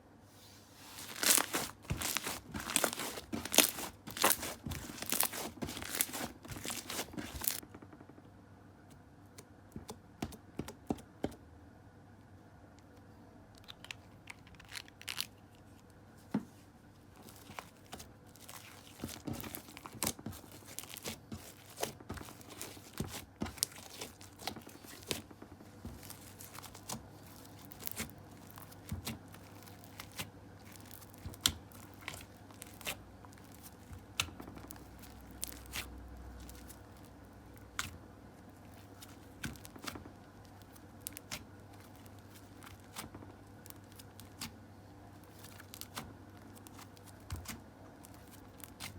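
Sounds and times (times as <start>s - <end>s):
slime crackling and popping: 1.0s - 7.6s, 17.2s - 48.9s.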